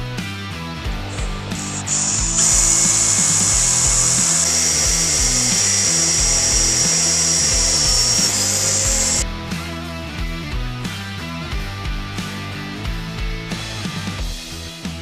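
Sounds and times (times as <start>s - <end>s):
rock music: 0.0s - 15.0s
power tool whining on steel: 1.1s - 9.2s.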